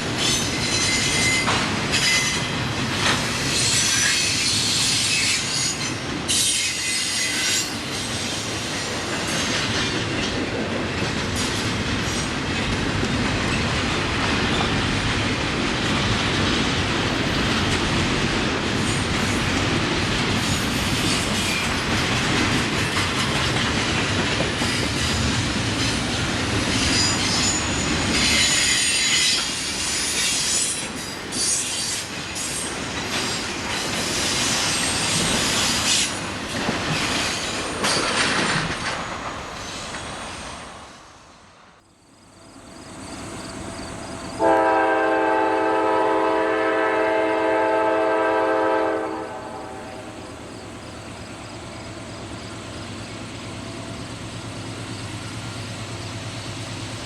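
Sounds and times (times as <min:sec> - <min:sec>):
train wheels clattering on rails: 0:00.0 - 0:41.4
high-pitched wheel squeal: 0:03.6 - 0:07.8.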